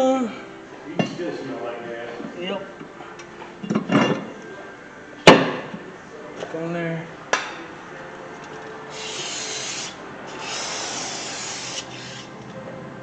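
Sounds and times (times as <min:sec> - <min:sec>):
aerosol can spraying: 0:08.9 - 0:12.2.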